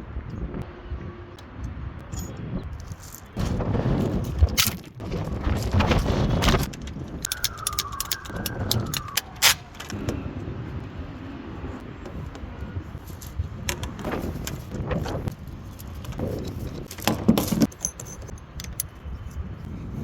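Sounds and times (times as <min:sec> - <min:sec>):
metal tools clinking: 0:02.1 - 0:03.4, 0:07.2 - 0:09.2, 0:15.6 - 0:19.2
thin falling squeal: 0:07.2 - 0:09.9.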